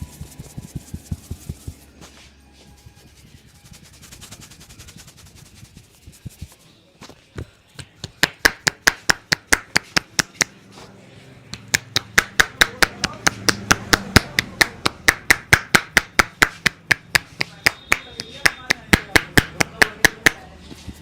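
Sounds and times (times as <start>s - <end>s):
hands rubbing a head: 0.0s - 6.8s
hand chops and slaps on head: 7.8s - 10.6s, 11.5s - 20.4s.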